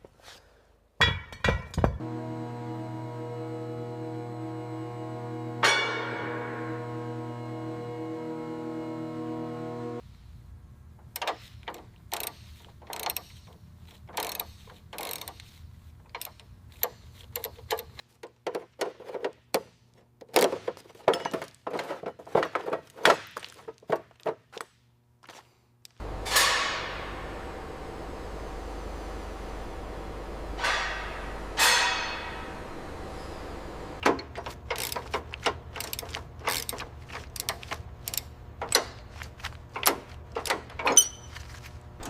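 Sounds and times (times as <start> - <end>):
metallic clicks of hand tools: 11.1 - 18.1, 34.0 - 39.0.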